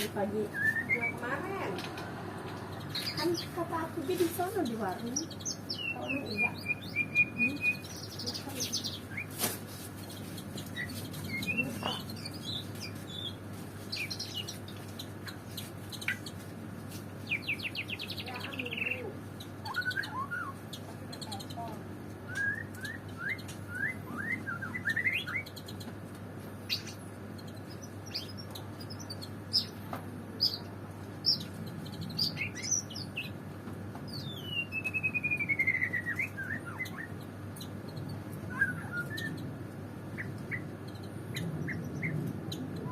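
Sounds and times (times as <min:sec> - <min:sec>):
steady low hum: 0:00.0 - 0:42.9
bird singing whistled phrases: 0:00.5 - 0:01.3, 0:05.7 - 0:09.3, 0:10.8 - 0:11.8, 0:19.6 - 0:20.6, 0:22.3 - 0:25.5, 0:34.1 - 0:37.1, 0:38.5 - 0:39.4.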